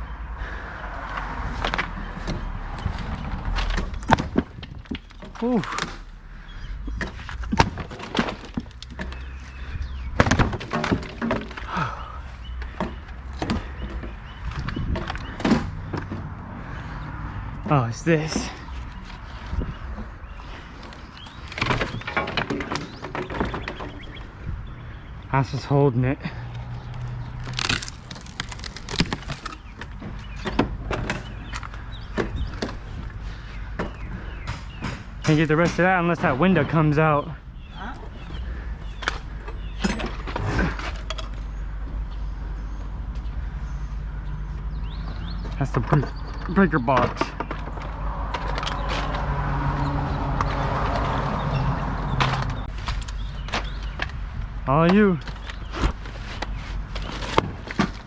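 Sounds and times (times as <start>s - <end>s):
wooden boards struck and splintering: 3.6s - 6.1s, 7.0s - 9.2s, 10.1s - 11.8s, 27.4s - 31.3s.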